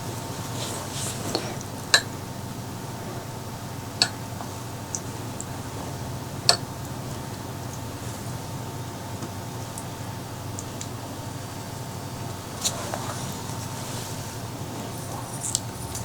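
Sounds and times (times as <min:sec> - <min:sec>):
low steady hum: 0:00.0 - 0:16.0
tableware clinking: 0:14.8 - 0:16.0.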